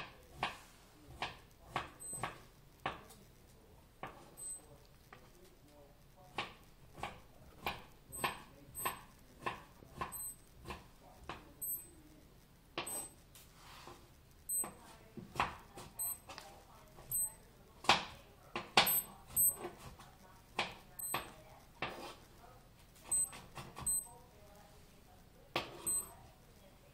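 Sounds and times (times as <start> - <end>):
digital wristwatch beeping: 1.8 - 2.6, 4.2 - 4.9, 7.7 - 10.6, 11.5 - 12.2, 12.8 - 13.3, 14.4 - 14.8, 15.9 - 16.3, 17.1 - 17.5, 18.8 - 19.7, 21.0 - 21.4, 23.1 - 24.2, 25.7 - 26.3.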